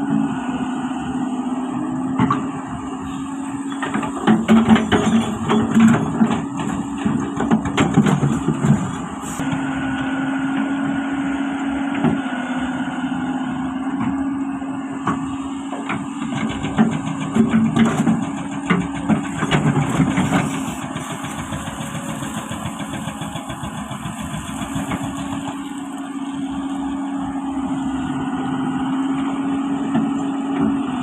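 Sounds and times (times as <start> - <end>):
excavator engine running: 0.0 - 31.0
metal clanks and knocks: 3.6 - 9.2, 15.8 - 25.8.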